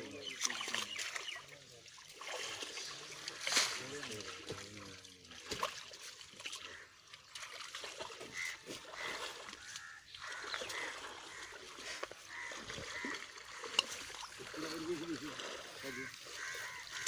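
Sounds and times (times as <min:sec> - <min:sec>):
water splashing and trickling: 0:00.0 - 0:17.0
repeated animal calls: 0:08.1 - 0:17.0.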